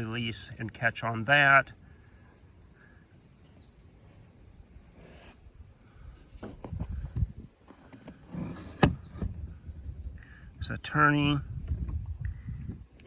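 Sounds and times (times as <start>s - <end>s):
rifle handling rubbing and scraping: 4.0s - 5.5s, 6.2s - 8.9s.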